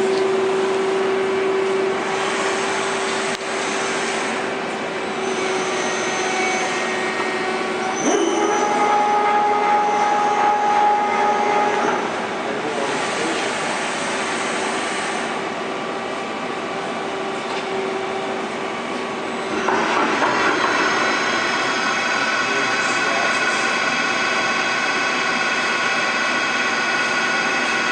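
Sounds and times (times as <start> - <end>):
machine whine with held tones: 0.0 - 12.4, 16.8 - 27.9.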